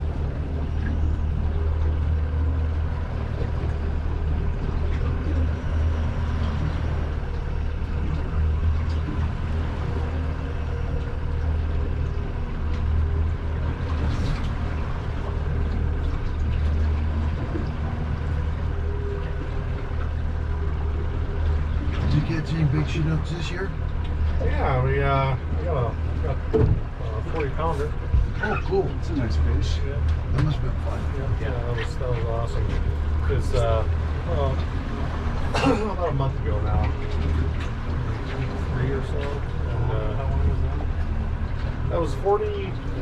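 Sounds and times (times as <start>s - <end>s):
boat engine droning: 0.0s - 43.0s.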